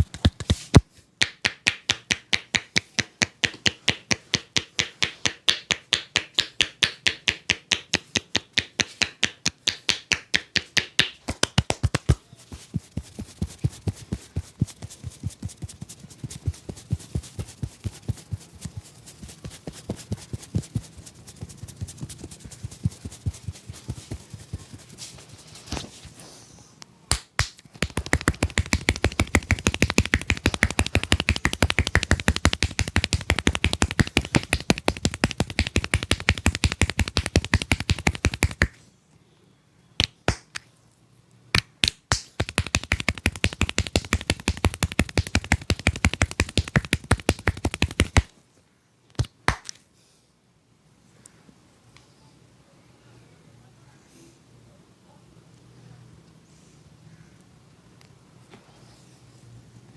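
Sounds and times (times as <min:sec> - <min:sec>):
hands clapping and slapping head: 0:00.0 - 0:16.4, 0:27.1 - 0:38.8, 0:40.0 - 0:40.7, 0:41.5 - 0:48.3, 0:49.1 - 0:49.8.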